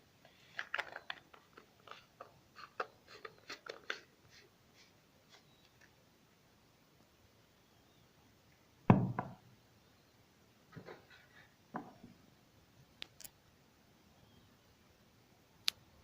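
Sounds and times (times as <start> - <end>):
knocks on a hard surface: 8.9 - 9.4.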